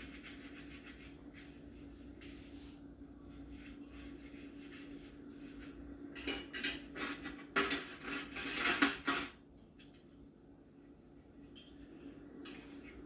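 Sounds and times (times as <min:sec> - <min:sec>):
steady low hum: 0:00.0 - 0:13.0
dishes scraping and clinking: 0:04.6 - 0:09.4, 0:11.5 - 0:13.0.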